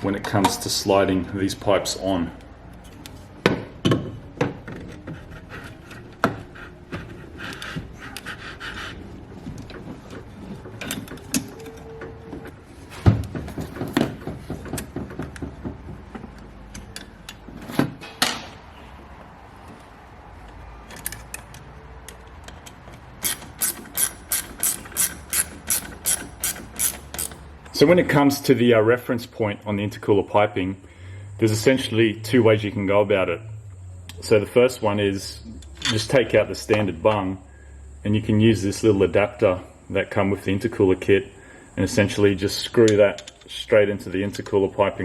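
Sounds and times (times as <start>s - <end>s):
hand tools and metal parts knocking: 9.4s - 18.6s, 19.6s - 27.8s
ratchet clicking: 20.9s - 27.4s.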